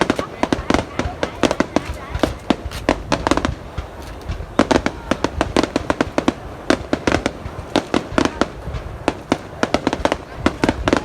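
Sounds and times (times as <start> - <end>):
fireworks exploding: 0.0 - 11.0.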